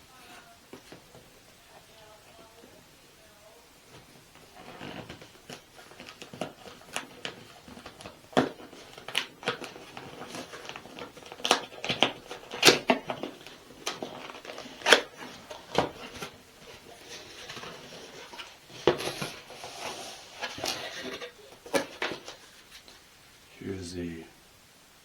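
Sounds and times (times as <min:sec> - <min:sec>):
cardboard packaging crinkling: 0:03.8 - 0:23.1.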